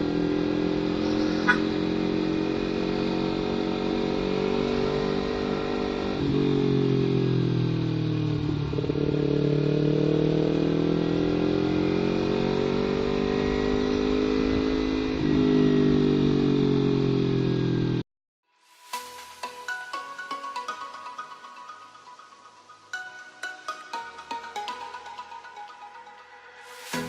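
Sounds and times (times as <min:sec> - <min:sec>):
motorcycle engine exhaust note: 0:00.0 - 0:16.0.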